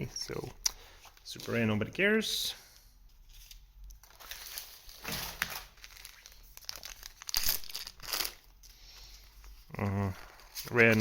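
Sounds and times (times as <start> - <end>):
foil wrapper crinkling and tearing: 4.0 - 8.6.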